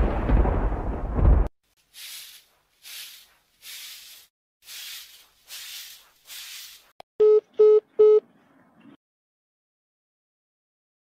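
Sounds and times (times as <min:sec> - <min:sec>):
short hissing bursts: 0:01.8 - 0:07.0.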